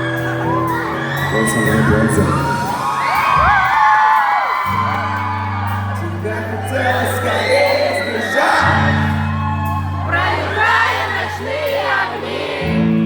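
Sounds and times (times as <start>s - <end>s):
crowd singing and whooping: 0.0s - 13.0s
synth bass: 4.7s - 11.4s.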